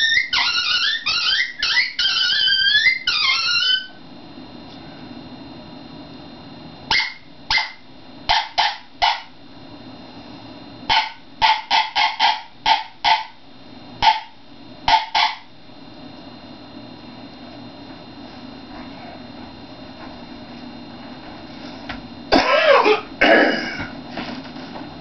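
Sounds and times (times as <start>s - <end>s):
predator call sounding coyote barks: 6.9s - 9.4s, 10.9s - 13.4s, 14.0s - 15.5s.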